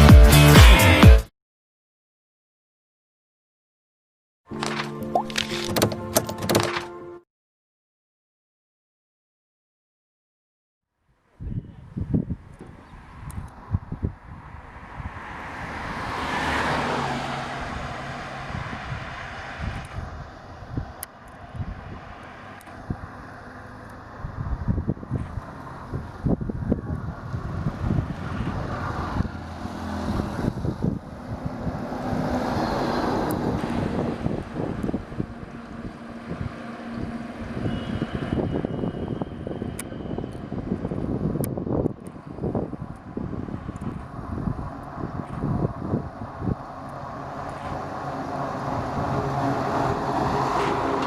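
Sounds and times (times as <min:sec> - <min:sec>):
wind buffeting microphone: 0:11.4 - 0:23.4, 0:24.0 - 0:51.0
vehicle passing by: 0:12.9 - 0:51.0.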